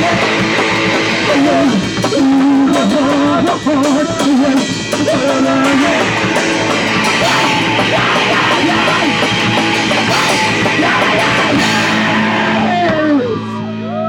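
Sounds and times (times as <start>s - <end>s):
punk rock band playing: 0.0s - 13.8s
sustained guitar chord ringing: 5.7s - 14.0s.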